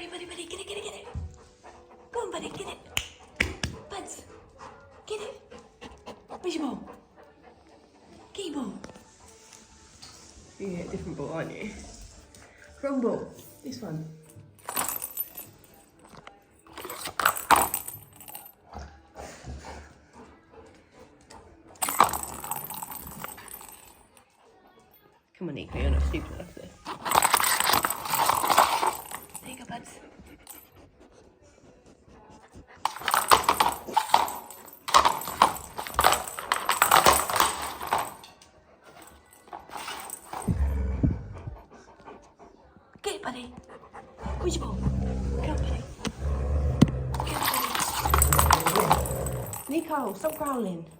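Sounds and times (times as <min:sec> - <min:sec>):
cat toy with balls rattling: 0:14.5 - 0:18.6, 0:21.8 - 0:24.1, 0:26.8 - 0:29.7, 0:32.8 - 0:40.8, 0:44.4 - 0:50.8
plastic toy clattering: 0:47.2 - 0:49.6.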